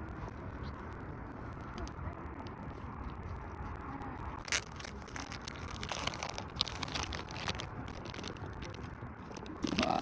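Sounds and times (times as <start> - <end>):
plastic packaging crinkling: 4.4 - 10.0
plastic packaging tearing: 4.4 - 10.0.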